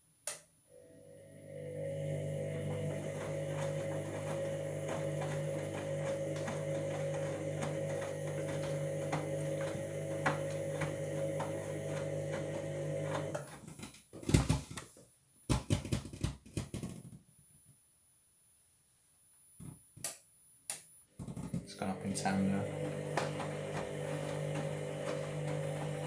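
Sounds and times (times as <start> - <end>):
washing machine drum grinding: 1.8 - 13.7, 21.2 - 26.0.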